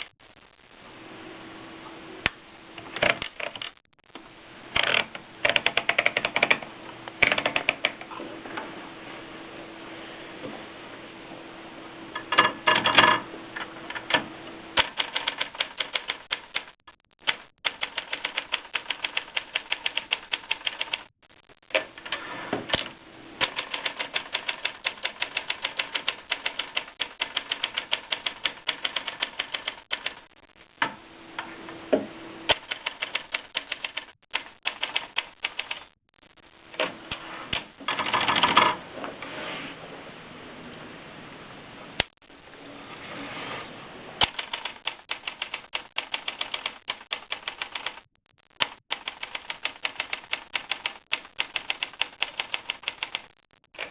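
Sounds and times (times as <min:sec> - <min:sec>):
typewriter clatter: 0:14.8 - 0:21.0, 0:22.7 - 0:30.2, 0:44.2 - 0:53.9.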